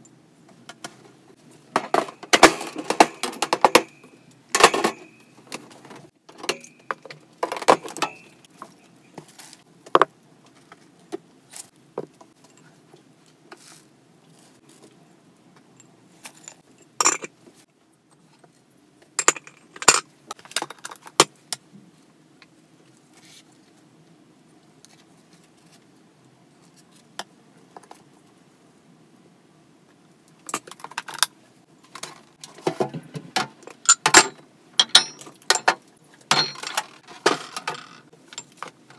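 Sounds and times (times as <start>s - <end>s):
plastic and metal cage parts rattling: 0.8s - 10.7s, 19.2s - 21.3s, 30.4s - 38.9s.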